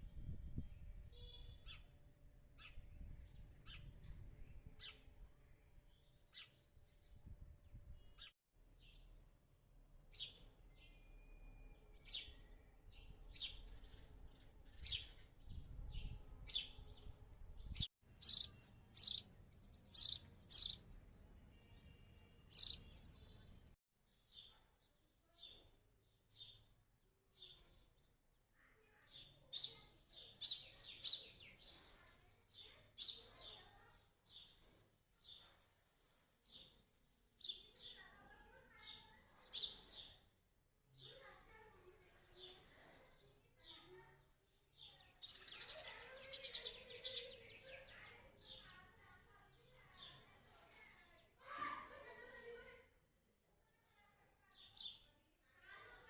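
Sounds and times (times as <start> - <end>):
sparrows chirping: 0.0 - 28.1, 28.9 - 40.3, 41.0 - 51.3, 53.9 - 56.0.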